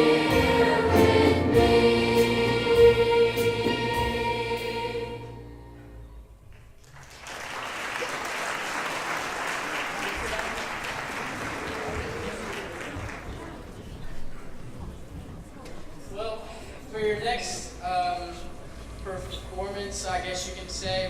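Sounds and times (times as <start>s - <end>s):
choir holding a chord: 0.0s - 6.0s
audience applause: 6.8s - 13.9s.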